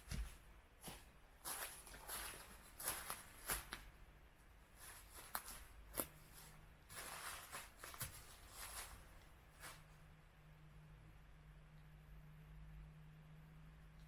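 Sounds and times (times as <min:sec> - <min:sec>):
footsteps on forest floor: 0:00.0 - 0:04.0, 0:04.8 - 0:09.9
rustling: 0:00.0 - 0:04.0, 0:04.6 - 0:10.0.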